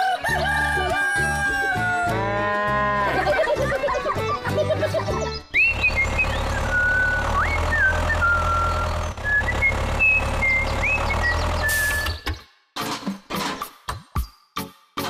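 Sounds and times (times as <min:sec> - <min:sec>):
engine-like hum: 0:02.8 - 0:12.3.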